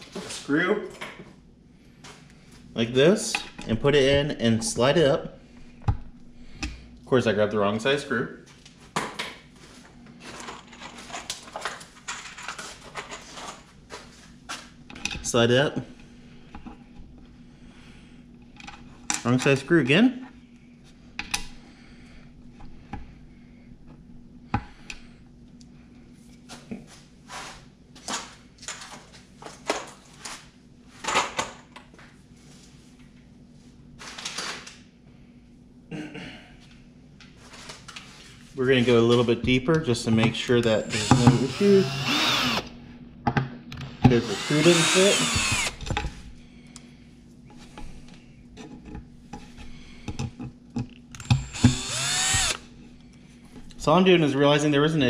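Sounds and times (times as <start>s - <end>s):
power drill whining: 40.8s - 42.7s, 44.1s - 45.8s, 51.2s - 52.6s.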